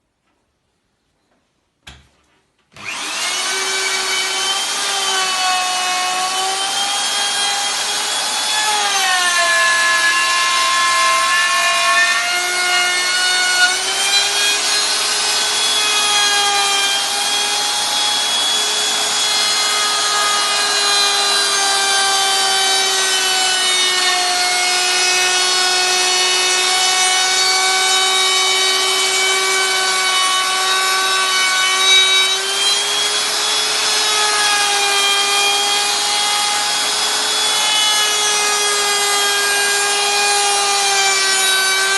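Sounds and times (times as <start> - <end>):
milling cutter motor whine: 2.8 - 4.8
cutter rasping in wood: 2.8 - 41.9.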